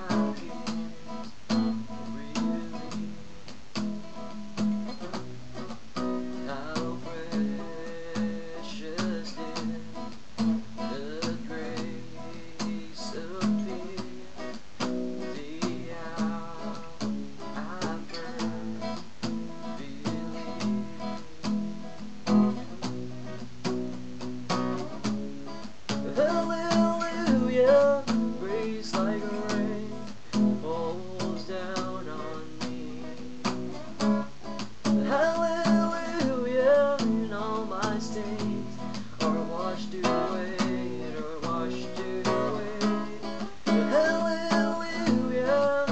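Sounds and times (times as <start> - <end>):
person singing: 0.0 - 3.0, 6.3 - 10.2, 10.8 - 21.8, 25.9 - 33.6, 34.8 - 45.9
acoustic guitar strumming: 0.0 - 45.9
microphone static: 0.0 - 45.9.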